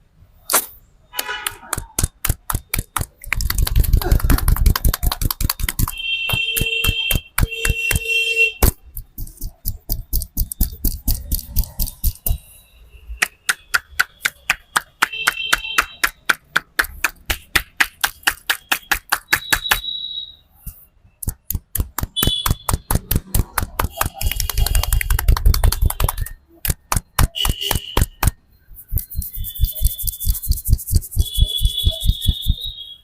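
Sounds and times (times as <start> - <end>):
hands slapping in chopping strokes: 0.5 - 12.4, 13.2 - 19.8, 21.2 - 32.6
high steady tone bursts: 23.4 - 33.0.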